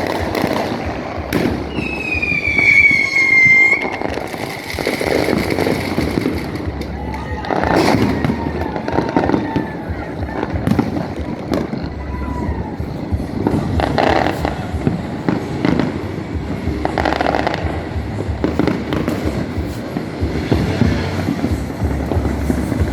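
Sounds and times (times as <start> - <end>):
fireworks bangs and crackles: 0.0 - 22.9
faint falling whistles: 1.6 - 4.7.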